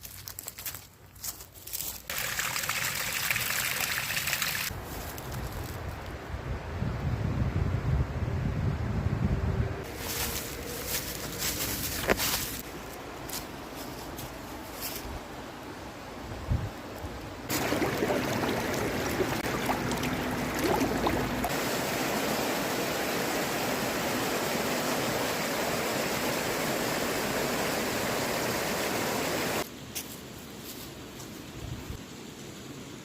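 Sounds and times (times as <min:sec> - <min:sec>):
steady rushing water-like noise: 0:09.9 - 0:29.9.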